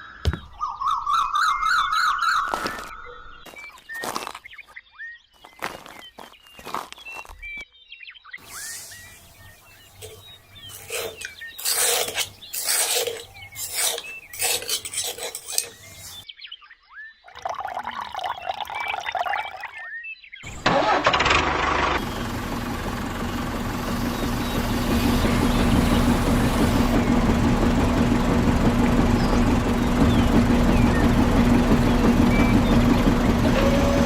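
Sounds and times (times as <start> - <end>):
birds chirping: 0.0 - 20.6, 22.0 - 34.0
small engine running: 8.4 - 16.2, 20.4 - 34.0.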